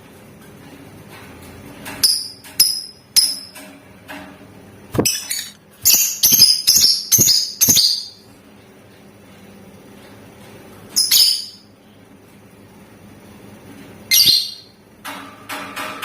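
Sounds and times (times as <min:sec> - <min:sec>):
lovebird shrill chirping: 0:05.0 - 0:08.2, 0:11.0 - 0:11.6.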